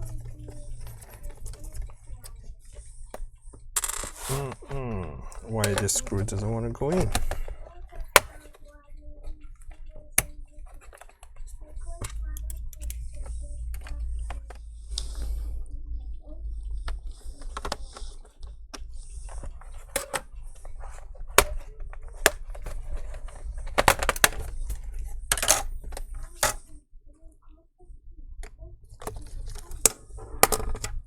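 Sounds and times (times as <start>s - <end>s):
clicks and taps of screws and screwdriver: 8.1s - 8.6s, 12.0s - 13.0s.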